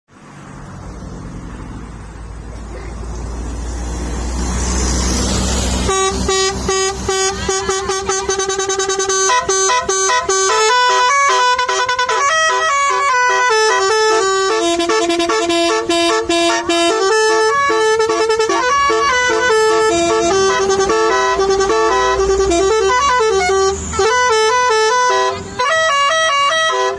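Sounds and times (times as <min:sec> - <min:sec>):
multi-tone air horn tune: 0:05.7 - 0:26.9.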